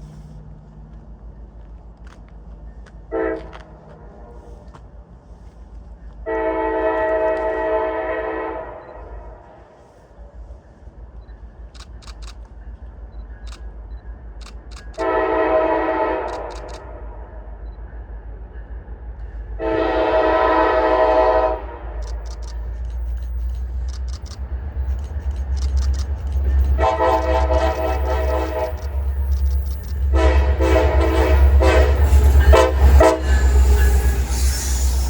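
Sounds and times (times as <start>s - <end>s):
locomotive air horn blasts: 3.1s - 4.6s, 6.3s - 9.5s, 15.0s - 17.0s, 19.6s - 22.1s, 26.5s - 29.2s, 30.0s - 35.0s
camera shutter clicks: 11.8s - 12.5s, 14.4s - 15.1s, 16.3s - 16.9s, 22.0s - 24.4s, 25.0s - 26.4s
diesel engine rumbling: 19.2s - 35.0s.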